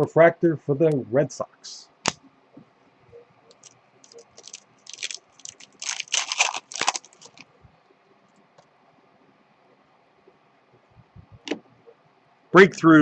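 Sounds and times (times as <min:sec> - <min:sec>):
foil wrappers crinkling: 0:03.5 - 0:07.5.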